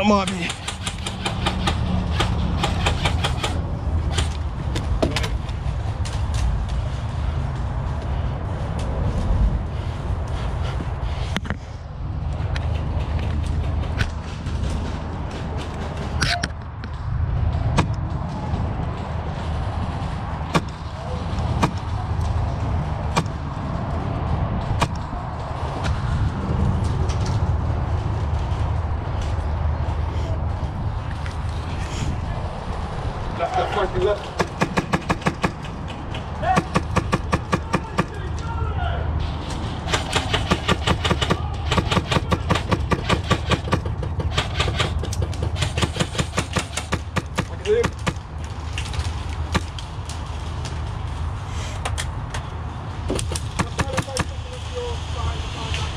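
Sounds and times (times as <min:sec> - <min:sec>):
steady low rumble: 0:00.0 - 0:55.9
rapid airsoft gunfire: 0:34.4 - 0:38.2, 0:39.9 - 0:45.0, 0:45.6 - 0:48.2, 0:53.4 - 0:54.4
airsoft gun shots: 0:39.9 - 0:44.9.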